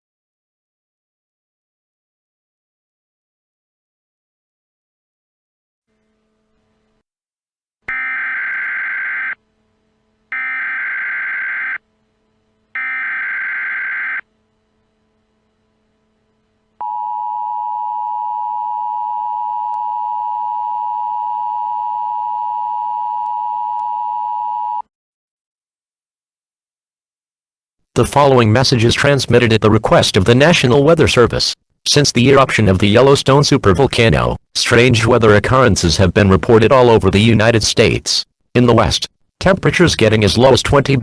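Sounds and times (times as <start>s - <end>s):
steady attention tone: 7.9s - 24.8s.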